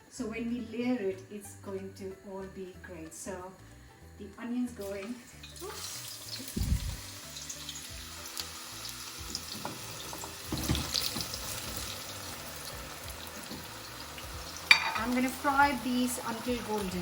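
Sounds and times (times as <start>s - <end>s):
onions sizzling in oil: 4.7s - 17.0s
knocks on pan: 9.5s - 11.7s.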